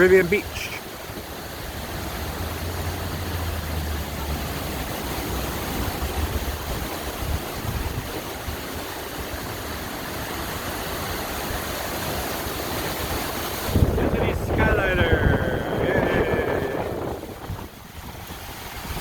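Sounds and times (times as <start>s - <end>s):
wind buffeting microphone: 4.2s - 19.0s.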